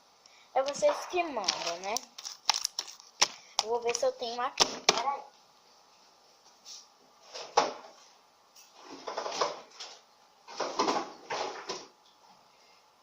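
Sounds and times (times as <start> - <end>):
household items rustling and clattering: 0.6 - 3.4, 8.6 - 11.9.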